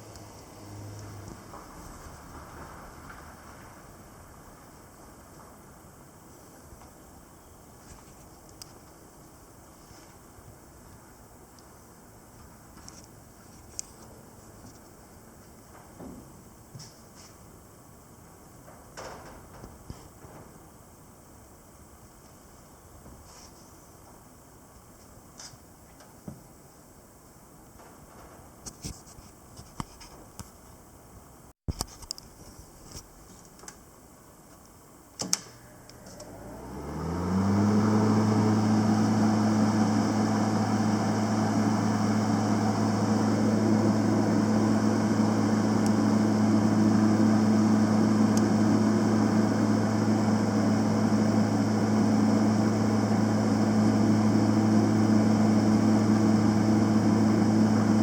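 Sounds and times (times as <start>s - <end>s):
welder humming drone: 35.7s - 58.0s.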